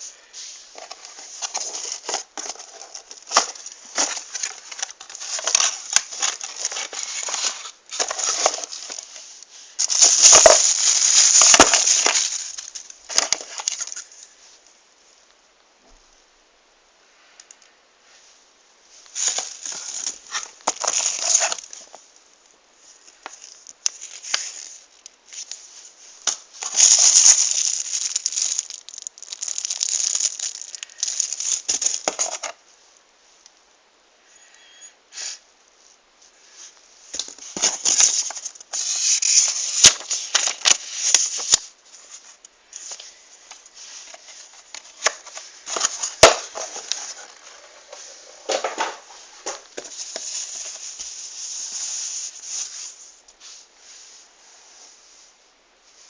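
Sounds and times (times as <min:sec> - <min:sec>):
packaging rustling and rattling: 0:00.7 - 0:09.2, 0:09.8 - 0:14.3, 0:19.2 - 0:22.0, 0:26.3 - 0:32.6, 0:37.2 - 0:51.0.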